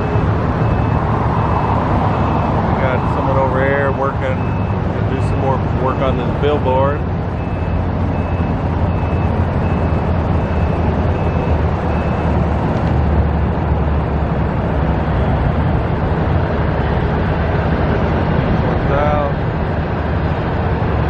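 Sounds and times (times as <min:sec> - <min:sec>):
backup alarm beeping: 0:00.0 - 0:05.4, 0:07.3 - 0:12.4
low vehicle rumble: 0:00.0 - 0:21.0.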